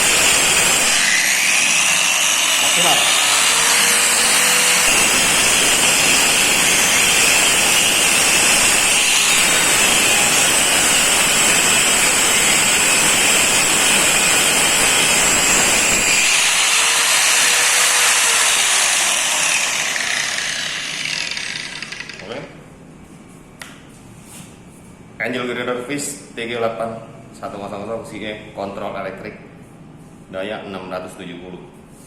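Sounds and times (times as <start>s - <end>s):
angle grinder grinding: 0.0s - 22.3s.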